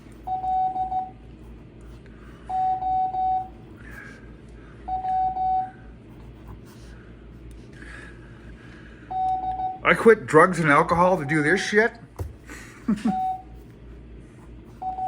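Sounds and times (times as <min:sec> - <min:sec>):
morse code beeps: 0:00.3 - 0:01.2, 0:02.5 - 0:03.5, 0:04.9 - 0:05.7, 0:09.1 - 0:09.8, 0:13.1 - 0:13.5.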